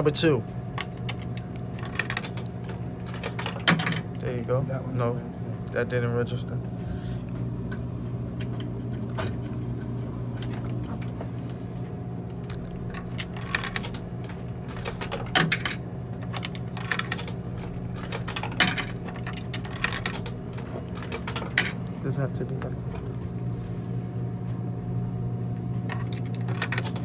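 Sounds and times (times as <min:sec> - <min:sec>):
vending machine humming: 0:00.0 - 0:27.0
coins clinking in vending machine: 0:00.8 - 0:04.2, 0:12.4 - 0:23.8, 0:25.9 - 0:27.0.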